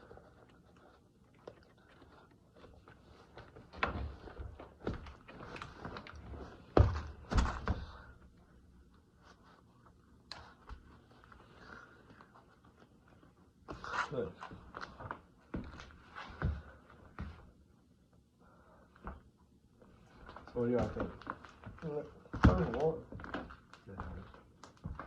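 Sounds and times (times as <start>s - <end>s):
shoe thuds and knocks: 22.3s - 22.8s.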